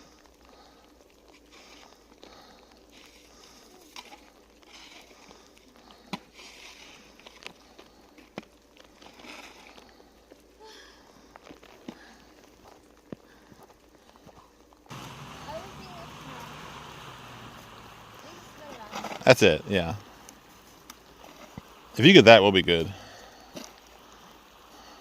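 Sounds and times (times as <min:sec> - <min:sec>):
shovel scraping snow: 0:03.9 - 0:05.2, 0:06.3 - 0:07.4.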